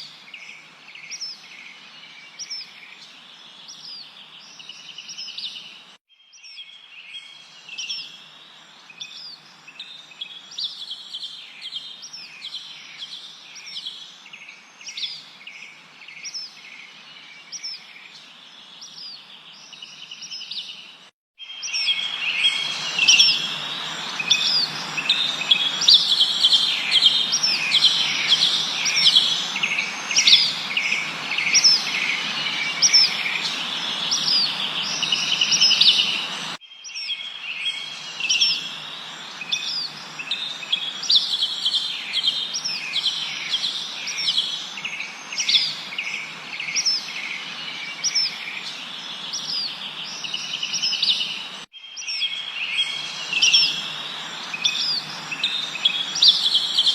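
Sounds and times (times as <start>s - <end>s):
songbirds chirping and trilling: 0.0s - 56.9s
steady background hiss: 21.7s - 36.6s, 37.4s - 51.7s, 52.4s - 56.9s.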